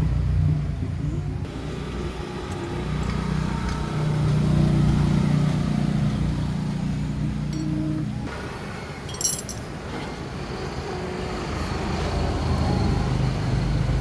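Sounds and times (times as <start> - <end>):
short metallic clink: 9.1 - 9.7.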